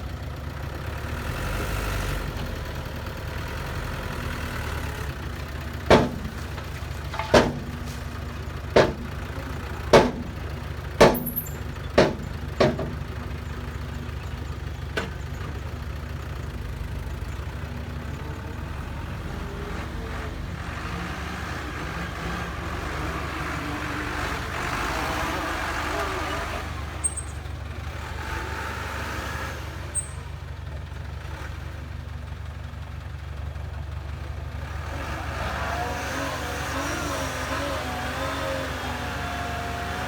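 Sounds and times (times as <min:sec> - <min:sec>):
diesel engine running: 0:00.0 - 0:40.0
people talking: 0:09.2 - 0:10.2.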